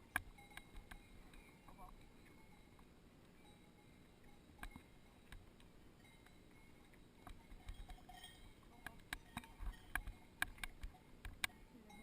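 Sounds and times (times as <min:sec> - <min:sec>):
cowbells clanking: 0:00.0 - 0:12.0.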